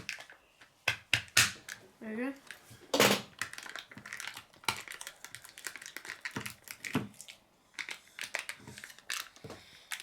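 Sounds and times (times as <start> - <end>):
plastic packaging clicking and crackling: 2.5 - 10.0.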